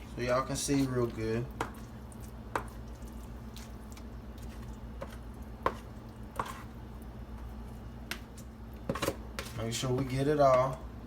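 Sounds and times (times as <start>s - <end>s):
low steady hum: 0.0s - 11.0s
spoon scraping a bowl: 5.0s - 6.8s.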